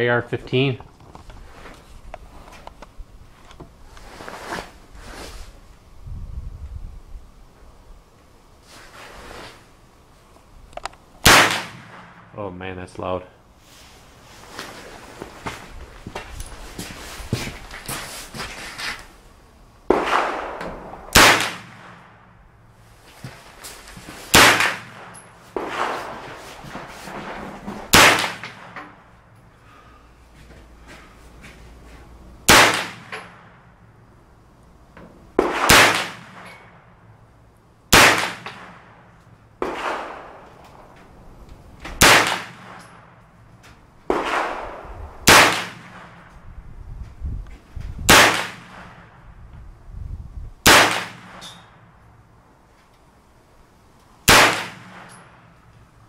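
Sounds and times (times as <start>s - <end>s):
rifle gunshots: 11.2s - 12.3s, 19.9s - 22.2s, 24.3s - 26.4s, 27.9s - 28.8s, 32.5s - 33.5s, 35.4s - 36.6s, 37.9s - 38.8s, 39.6s - 40.4s, 42.0s - 42.8s, 44.1s - 46.2s, 48.1s - 49.0s, 50.6s - 51.4s, 54.3s - 55.1s.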